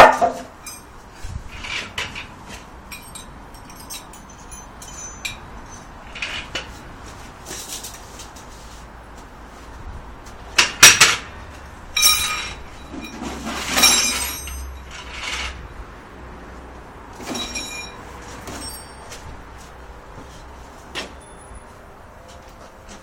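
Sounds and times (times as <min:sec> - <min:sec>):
ringing metallic clanks: 0:00.0 - 0:01.0, 0:02.9 - 0:06.6, 0:12.0 - 0:15.6, 0:17.2 - 0:19.2, 0:21.1 - 0:21.7
sharp metal knocks: 0:10.5 - 0:11.4.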